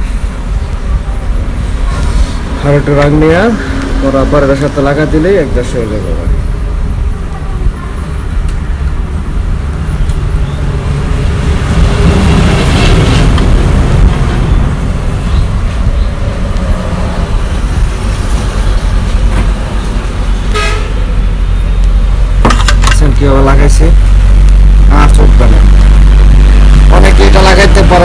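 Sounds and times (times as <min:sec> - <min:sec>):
road traffic: 0:00.0 - 0:28.0
vehicle horn tooting: 0:20.5 - 0:21.1.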